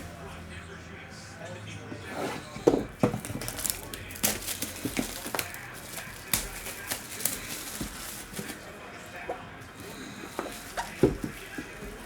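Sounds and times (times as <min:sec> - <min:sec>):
cardboard handled: 0:02.1 - 0:12.0
plastic wrap crinkling: 0:02.6 - 0:12.0.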